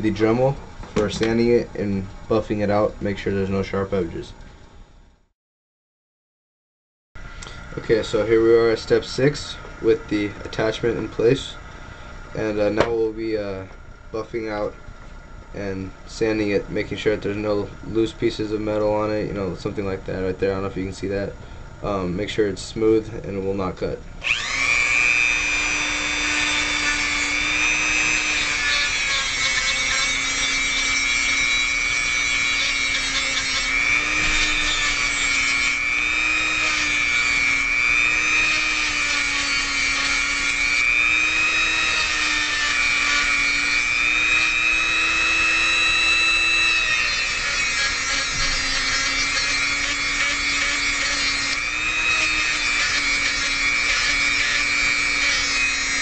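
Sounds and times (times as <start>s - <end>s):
rotary tool sanding metal: 24.2s - 56.0s.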